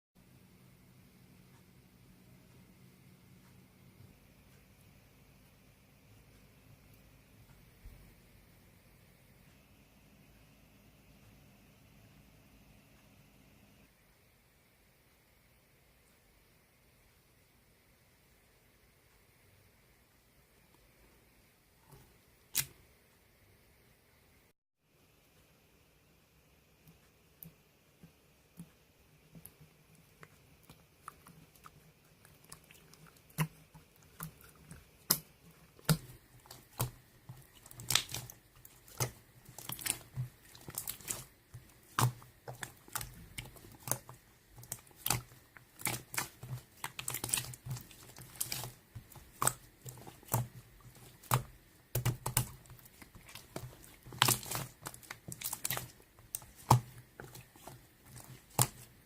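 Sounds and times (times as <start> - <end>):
slime squished by hand: 29.4 - 59.0.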